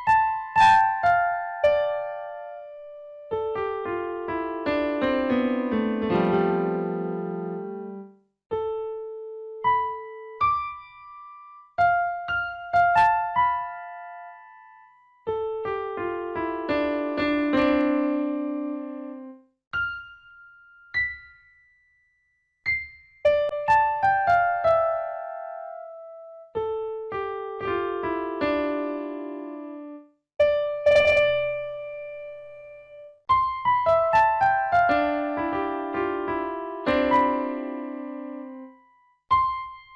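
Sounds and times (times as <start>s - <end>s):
background piano music: 0.0s - 39.9s.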